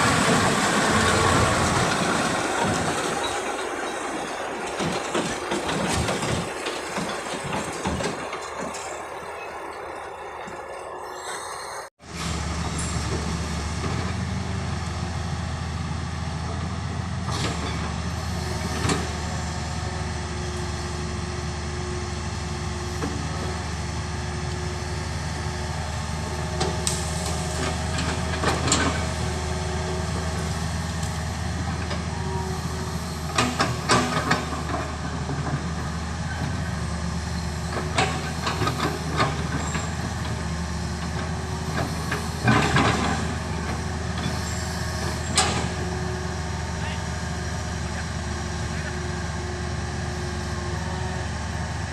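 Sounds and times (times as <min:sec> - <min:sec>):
heavy vehicle engine running: 0:00.0 - 0:51.9
knocks and clanks: 0:00.2 - 0:09.2, 0:33.3 - 0:35.8.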